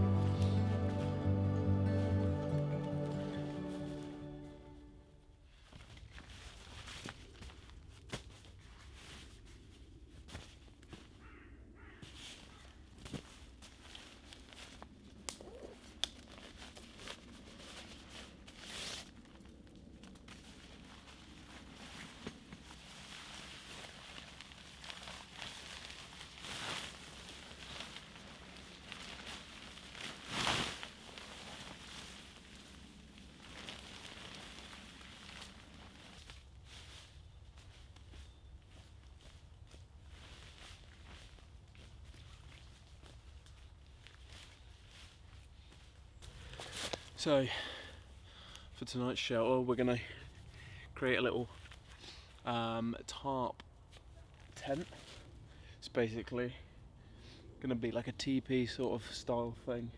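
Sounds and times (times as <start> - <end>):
clicks and rustles of handling gear: 12.0 - 39.4, 40.2 - 47.2.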